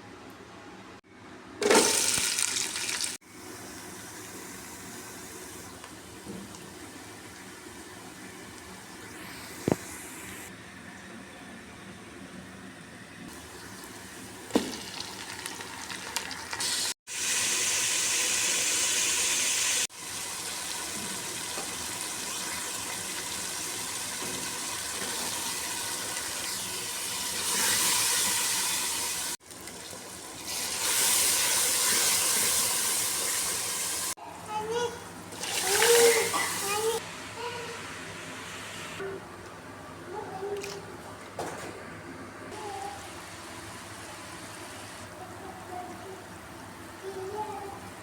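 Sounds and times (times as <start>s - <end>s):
food sizzling in a pot: 1.6s - 9.7s, 13.3s - 34.2s, 35.4s - 37.0s.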